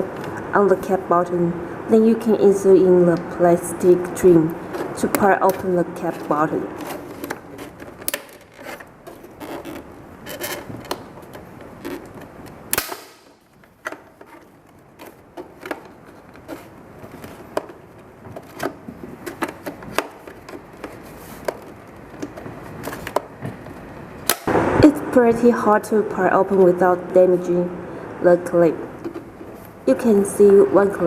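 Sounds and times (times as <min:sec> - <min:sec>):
plastic scraping: 0:04.5 - 0:24.2
plastic clip snapping: 0:06.8 - 0:09.8, 0:10.4 - 0:14.4, 0:24.2 - 0:24.5.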